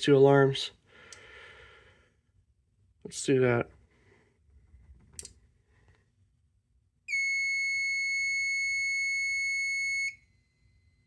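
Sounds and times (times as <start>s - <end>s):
fire alarm horn tone: 7.1s - 10.3s.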